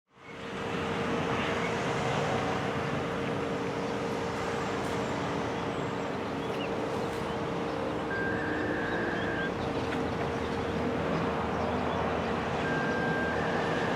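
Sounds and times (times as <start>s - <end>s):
road traffic noise: 0.1s - 13.9s.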